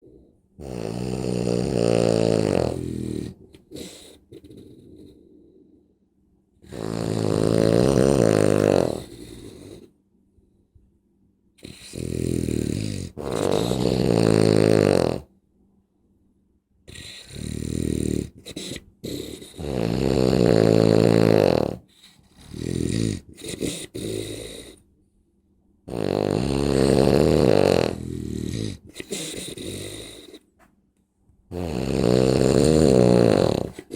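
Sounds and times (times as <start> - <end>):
woman snoring loudly: 0.6 - 3.9, 6.7 - 9.8, 11.6 - 15.3, 16.9 - 21.8, 22.4 - 24.7, 25.9 - 30.2, 31.5 - 33.9.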